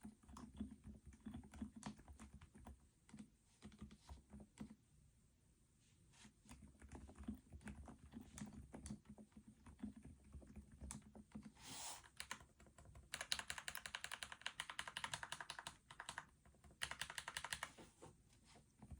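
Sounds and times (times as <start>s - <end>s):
soft muffled keyboard keystrokes: 0.0s - 4.8s, 6.4s - 18.9s.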